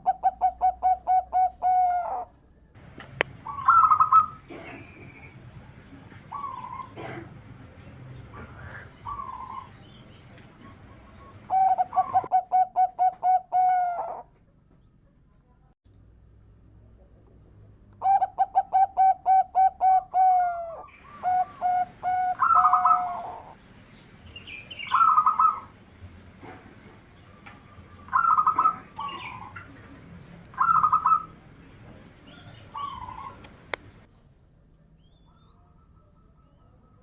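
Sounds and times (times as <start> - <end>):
dove cooing: 0.0 - 2.3, 3.4 - 7.5, 8.2 - 9.8, 10.5 - 14.3, 18.0 - 23.6, 24.8 - 25.7, 27.2 - 31.5, 32.2 - 34.1.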